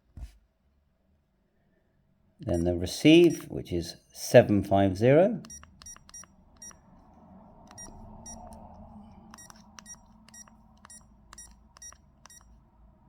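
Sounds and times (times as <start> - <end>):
short high key-press beeps: 2.5 - 3.4, 5.4 - 6.8, 7.7 - 8.6, 9.3 - 12.6
toggle clicking: 3.2 - 3.4, 5.4 - 6.8, 7.7 - 12.5.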